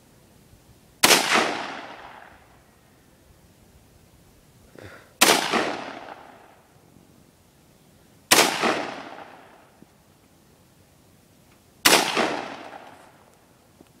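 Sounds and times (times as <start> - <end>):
rifle shots with echo: 1.0 - 2.4, 5.2 - 6.6, 8.3 - 9.6, 11.8 - 13.0.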